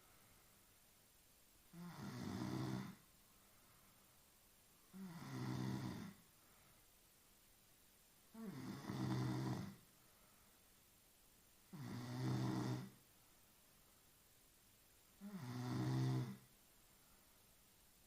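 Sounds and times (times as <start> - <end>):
woman snoring: 1.7 - 3.0, 4.9 - 6.2, 8.3 - 9.8, 11.7 - 13.0, 15.2 - 16.5.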